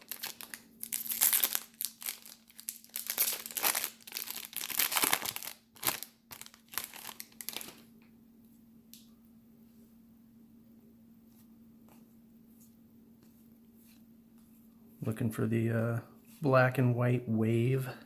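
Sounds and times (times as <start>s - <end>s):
plastic wrapper tearing and crinkling: 0.0s - 7.9s.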